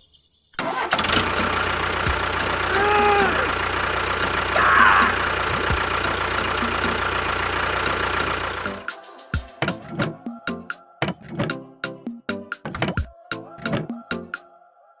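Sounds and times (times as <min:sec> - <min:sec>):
small engine knocking rhythmically: 0:00.7 - 0:09.8
brief pitched call: 0:02.4 - 0:06.2.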